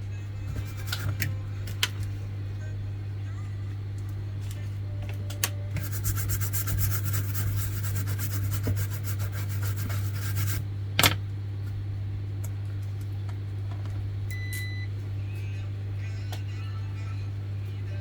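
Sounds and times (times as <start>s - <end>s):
steady low hum: 0.0s - 18.0s
hard tip scratching surface: 5.8s - 10.6s.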